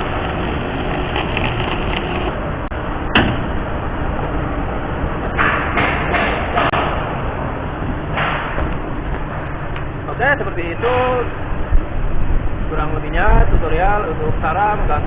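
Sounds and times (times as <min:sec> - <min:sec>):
welder arc buzzing: 0:00.0 - 0:02.7.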